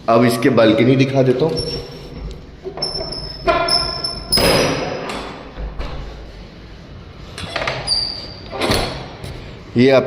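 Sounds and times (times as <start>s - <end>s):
door squeak: 1.5s - 2.0s, 2.7s - 4.9s, 7.4s - 9.0s.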